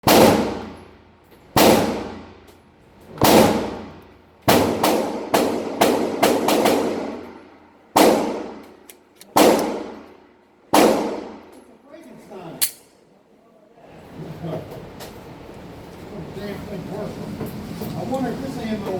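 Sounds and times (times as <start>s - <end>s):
gunshots with echoing decay: 0.0s - 0.8s, 1.6s - 2.3s, 3.2s - 3.9s, 4.5s - 10.1s, 10.7s - 11.5s.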